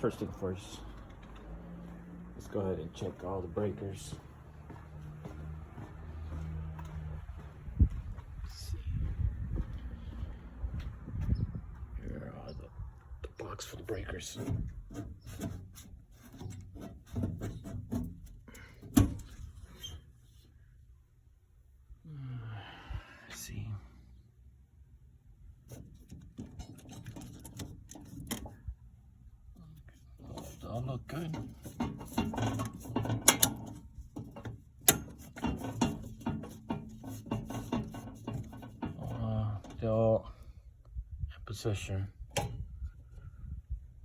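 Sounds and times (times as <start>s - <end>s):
breaker panel clicks and rubs: 25.6s - 28.7s, 29.6s - 39.8s.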